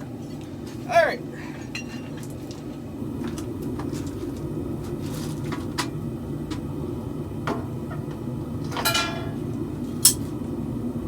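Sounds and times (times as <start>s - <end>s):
ringing metallic clink: 8.8s - 9.4s.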